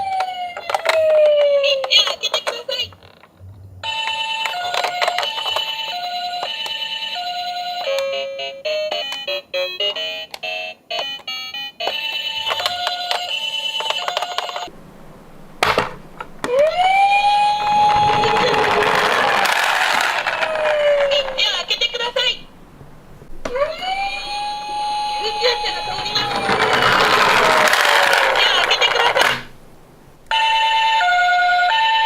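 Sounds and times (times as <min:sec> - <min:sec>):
wailing siren tone: 0:00.0 - 0:01.7, 0:16.4 - 0:21.7, 0:23.4 - 0:28.4, 0:30.3 - 0:32.0
electronic hi-lo siren: 0:16.4 - 0:21.4, 0:23.4 - 0:26.5.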